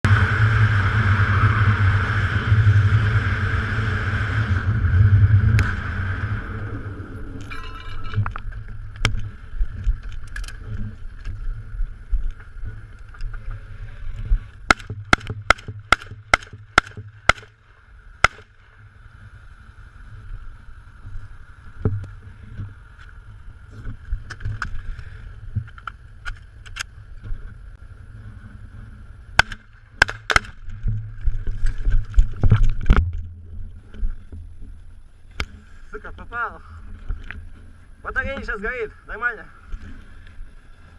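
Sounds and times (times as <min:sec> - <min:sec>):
atv engine running: 0:00.0 - 0:24.4
shotgun shots: 0:14.7 - 0:17.5, 0:18.2 - 0:18.5.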